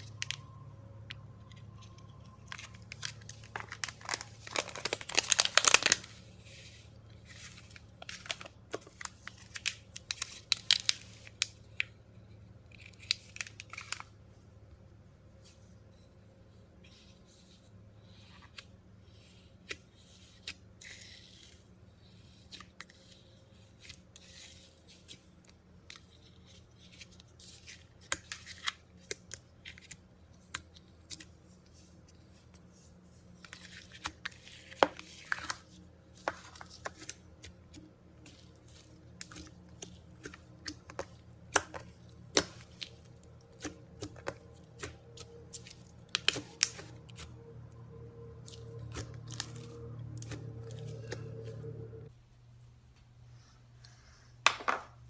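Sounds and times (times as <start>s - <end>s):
slime squishing: 1.6s - 14.3s, 26.8s - 51.9s.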